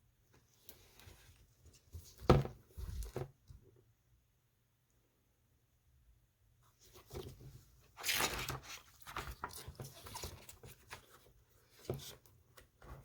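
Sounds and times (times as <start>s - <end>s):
pages turning: 6.9s - 12.2s.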